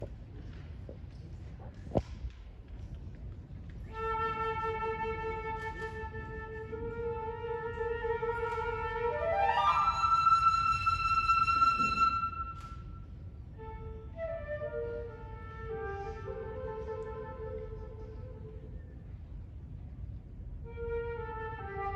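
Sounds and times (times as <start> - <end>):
solo flute melody: 3.9 - 18.8, 20.6 - 21.9.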